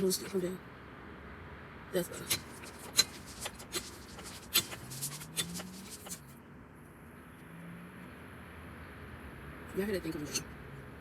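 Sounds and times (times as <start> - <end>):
sharp clicks and knocks: 2.3 - 6.2.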